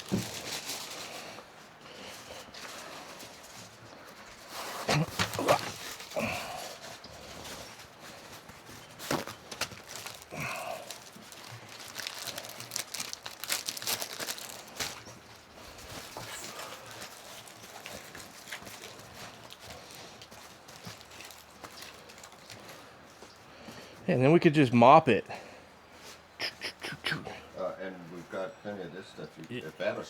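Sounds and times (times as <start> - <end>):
crinkling: 0.0 - 24.0.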